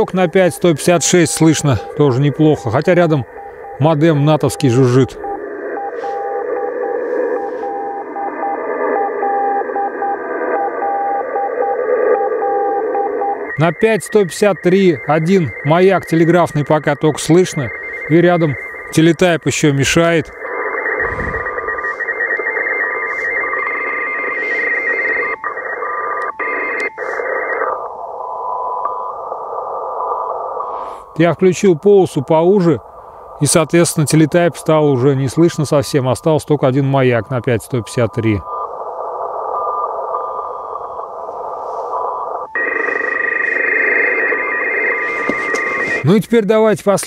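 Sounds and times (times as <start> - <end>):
morse code beeping: 0.0 - 28.4, 40.2 - 46.2
teletype signal buzz: 0.0 - 31.1, 36.7 - 46.2
radio hiss: 0.0 - 47.0.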